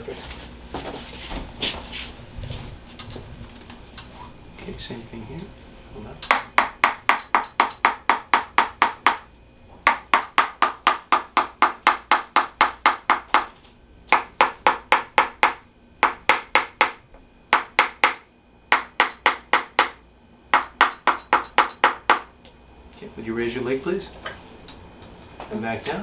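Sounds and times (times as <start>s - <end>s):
percussive tapping massage: 6.3s - 22.3s.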